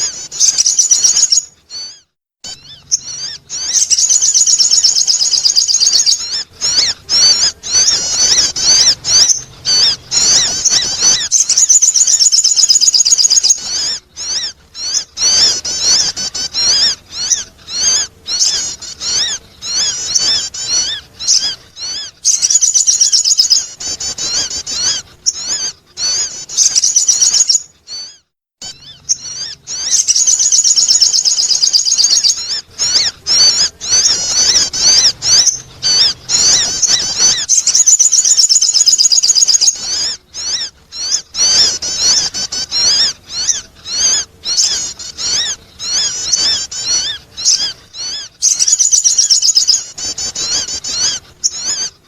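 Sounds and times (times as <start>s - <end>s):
bird chirping trills: 0.0s - 52.0s.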